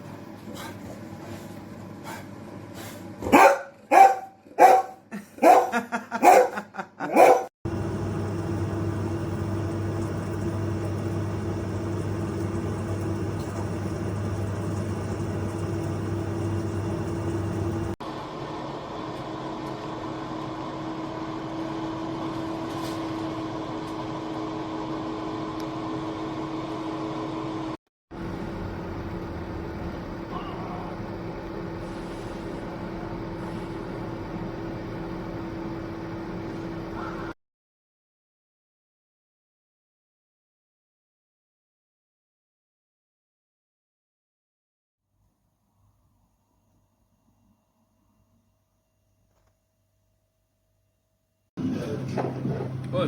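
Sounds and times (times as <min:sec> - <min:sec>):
dog barking: 0:03.2 - 0:07.5
air fryer fan humming: 0:07.7 - 0:37.3.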